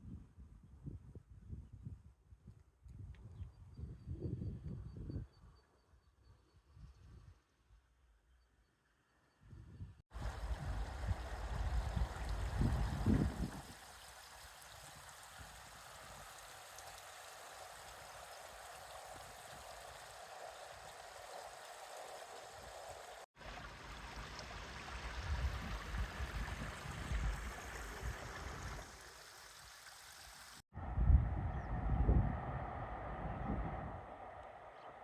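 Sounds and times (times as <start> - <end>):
low rumbles: 10.2 - 13.6.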